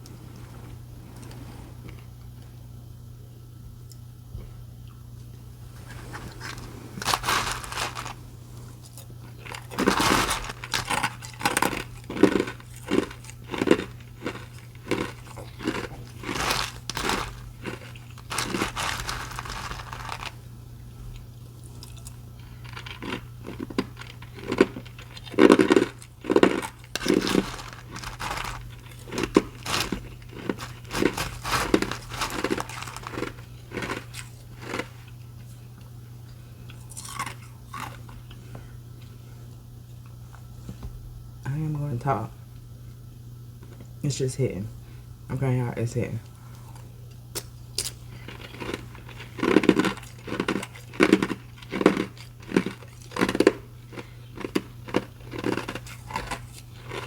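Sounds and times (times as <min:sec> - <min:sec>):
ice being crunched and chewed: 0:05.8 - 0:38.5, 0:46.5 - 0:57.0.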